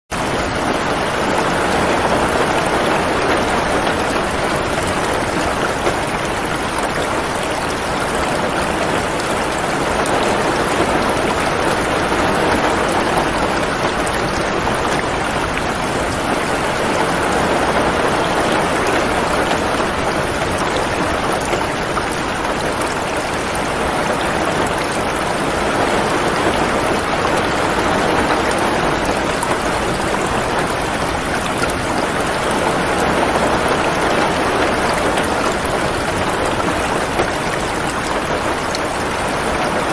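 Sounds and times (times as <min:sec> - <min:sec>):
rain falling on a roof: 0:00.1 - 0:39.9.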